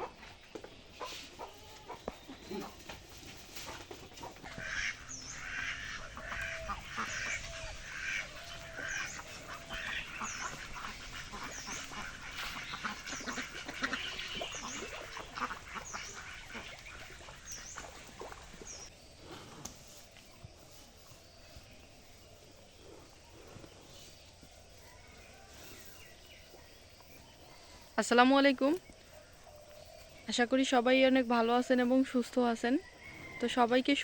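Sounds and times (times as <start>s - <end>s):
birds quacking: 3.7s - 18.9s.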